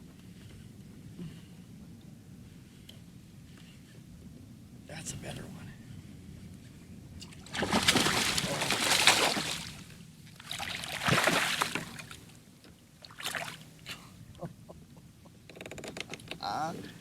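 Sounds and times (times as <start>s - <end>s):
fish thrashing water splashing: 7.4s - 12.2s.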